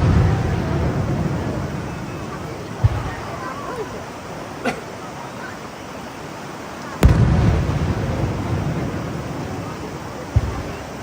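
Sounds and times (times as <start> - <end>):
small firework pop: 7.0 - 7.6
firework shell bursting: 7.0 - 11.0.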